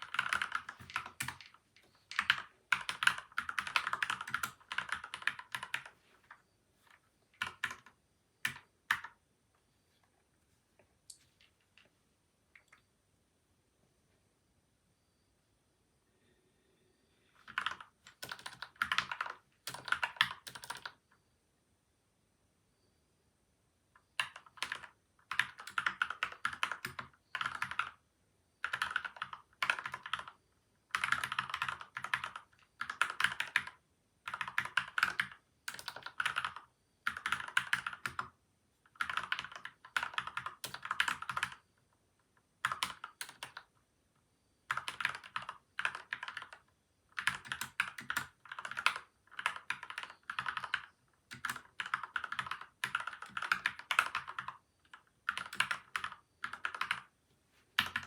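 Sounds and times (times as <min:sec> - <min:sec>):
mechanical keyboard typing: 0:00.0 - 0:06.0, 0:07.4 - 0:09.2, 0:17.4 - 0:21.0, 0:24.2 - 0:28.0, 0:28.6 - 0:41.6, 0:42.6 - 0:43.7, 0:44.7 - 0:57.1, 0:57.8 - 0:58.0.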